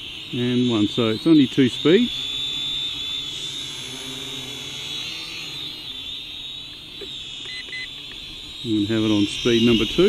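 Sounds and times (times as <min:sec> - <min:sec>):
quadcopter motors whining: 0:00.0 - 0:10.0
short beeps: 0:07.0 - 0:07.9.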